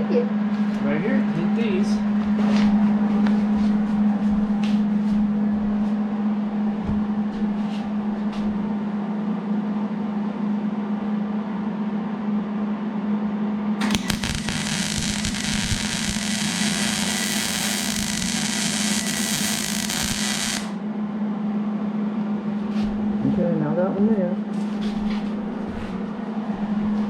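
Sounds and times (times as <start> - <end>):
electrical hum: 0.0 - 9.2, 13.6 - 27.0
welder arc crackling: 13.8 - 20.8.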